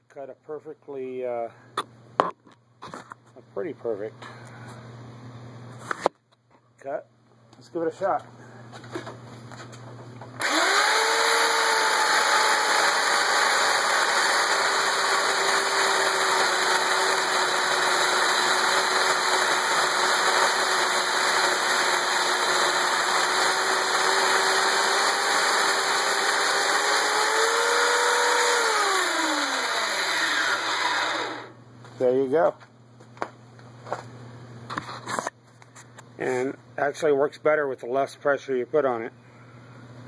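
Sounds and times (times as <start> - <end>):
chainsaw cutting through log: 10.4 - 31.6.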